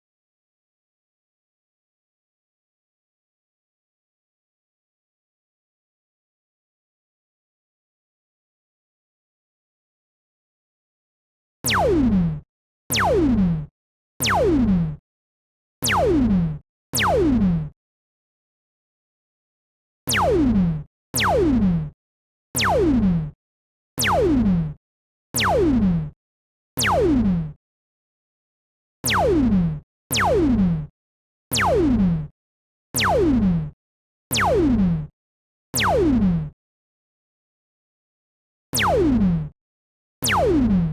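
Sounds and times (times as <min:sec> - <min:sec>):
sci-fi gun zaps: 0:11.7 - 0:12.2, 0:14.2 - 0:14.7, 0:15.8 - 0:16.3, 0:20.1 - 0:20.5, 0:22.6 - 0:23.0, 0:29.0 - 0:29.5, 0:30.1 - 0:30.6, 0:31.5 - 0:32.0, 0:33.0 - 0:33.4, 0:34.3 - 0:34.8, 0:35.8 - 0:36.2, 0:38.8 - 0:39.1, 0:40.2 - 0:40.8
synthesized laser gun zaps: 0:15.8 - 0:16.2, 0:20.1 - 0:20.4, 0:29.0 - 0:29.5, 0:31.5 - 0:32.0, 0:34.3 - 0:34.7, 0:38.8 - 0:39.1, 0:40.2 - 0:40.8.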